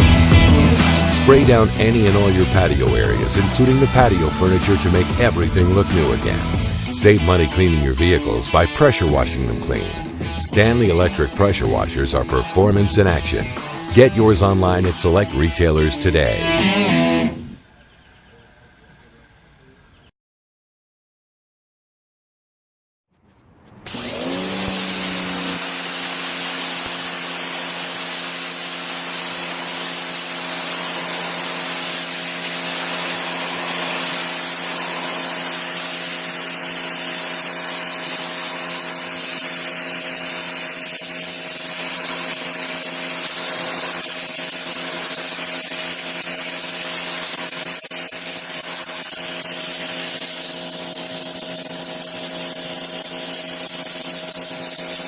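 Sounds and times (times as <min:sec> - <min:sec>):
pressure washer motor hum: 0:00.0 - 0:17.0, 0:23.7 - 0:55.0
hiss of spraying water: 0:23.8 - 0:55.0.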